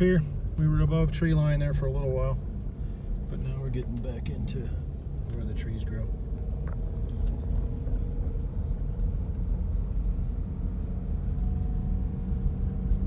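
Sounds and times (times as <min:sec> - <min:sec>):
car cabin road rumble: 0:00.0 - 0:13.0.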